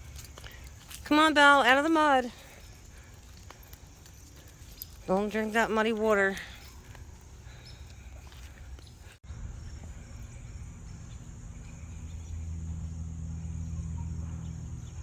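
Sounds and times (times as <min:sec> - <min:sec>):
insects chirring: 0:00.0 - 0:15.0
passing vehicle engine rumble: 0:08.5 - 0:15.0.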